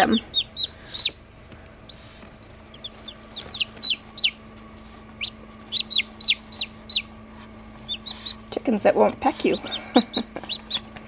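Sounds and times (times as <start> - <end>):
chicks peeping: 0.0 - 11.0
faint steady hum: 0.0 - 11.0.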